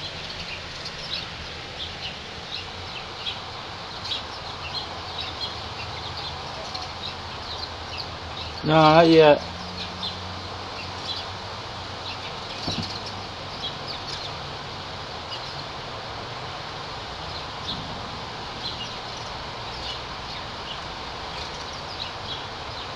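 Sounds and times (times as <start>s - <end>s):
outdoor background hiss: 0.0s - 22.9s
small birds chirping: 0.0s - 22.9s.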